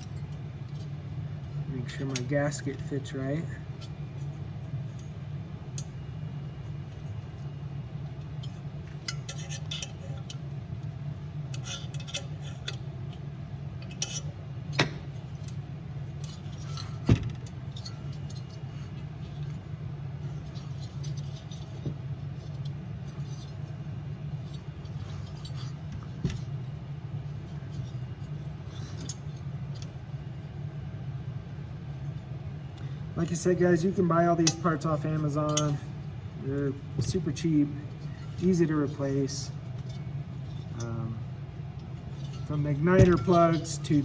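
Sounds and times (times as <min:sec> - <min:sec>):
steady low hum: 0:00.0 - 0:44.0
metal parts and tools clinking: 0:34.4 - 0:35.9, 0:42.2 - 0:44.0.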